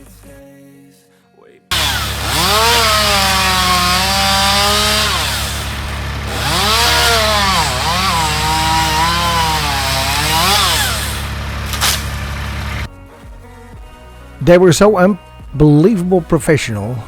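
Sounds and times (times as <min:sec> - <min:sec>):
chainsaw cutting wood: 0:01.7 - 0:12.9.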